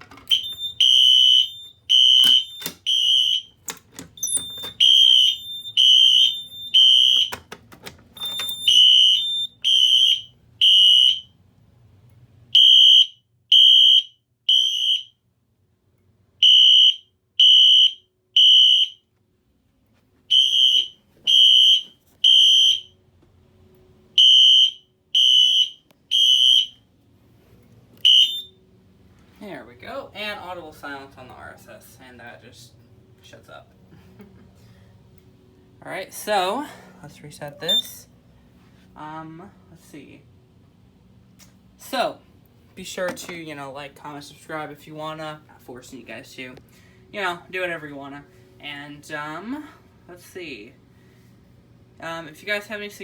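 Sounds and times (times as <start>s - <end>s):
fire alarm horn beeping: 0.3s - 7.5s, 8.2s - 11.4s, 12.5s - 15.2s, 16.4s - 19.1s, 20.3s - 23.0s, 24.1s - 26.9s, 28.0s - 28.6s, 37.6s - 38.0s.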